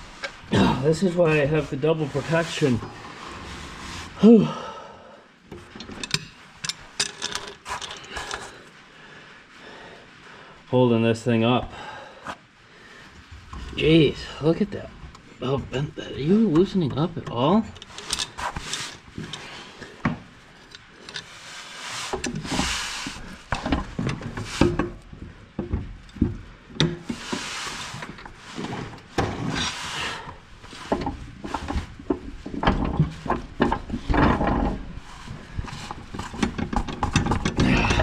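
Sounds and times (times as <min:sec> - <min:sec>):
hand tools knocking and clanking: 0:35.7 - 0:38.0.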